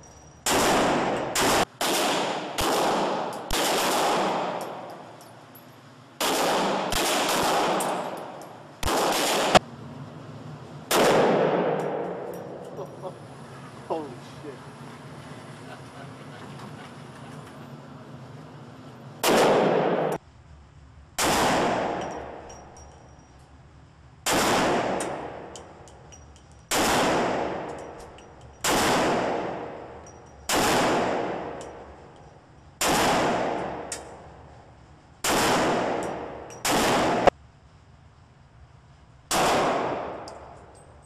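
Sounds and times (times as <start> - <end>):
gunshots: 0.4 - 4.9, 6.2 - 9.6, 10.9 - 12.6, 19.2 - 20.2, 21.2 - 22.4, 24.2 - 25.5, 26.7 - 27.8, 28.6 - 29.9, 30.5 - 31.6, 32.8 - 34.2, 35.2 - 37.3, 39.3 - 40.3.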